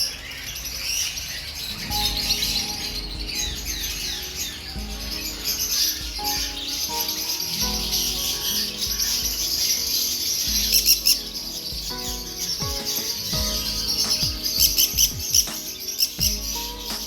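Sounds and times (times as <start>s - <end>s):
parrots chirping and chattering: 0.0s - 16.9s
music with steady tones and slides: 1.8s - 17.0s.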